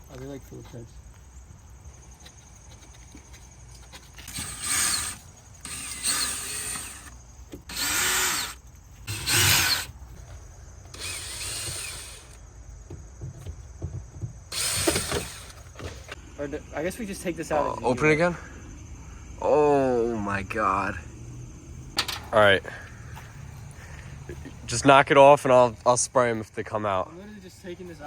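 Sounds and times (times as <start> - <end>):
power drill running: 4.2 - 9.9, 10.9 - 12.4, 14.5 - 15.8.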